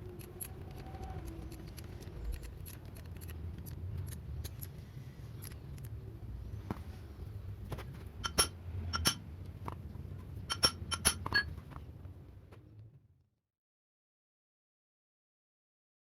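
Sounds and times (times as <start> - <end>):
low steady hum: 0.0 - 13.4
metal tools clinking: 8.2 - 9.2, 10.5 - 11.5.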